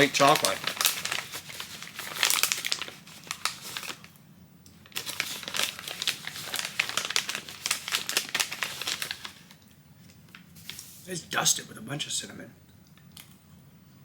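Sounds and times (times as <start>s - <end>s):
plastic packaging crinkling: 0.0s - 4.1s, 4.8s - 9.6s.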